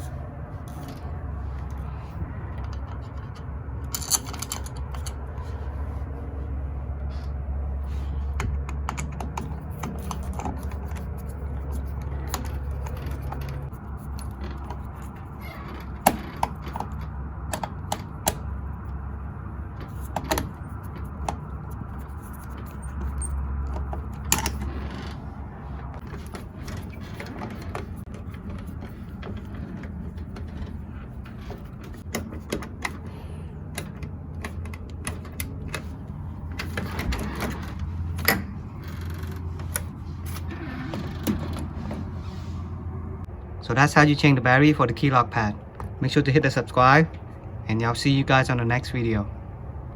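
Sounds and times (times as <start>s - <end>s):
steady low hum: 0.0s - 49.9s
deadbolt parts clicking and knocking: 8.4s - 18.6s, 26.0s - 39.9s.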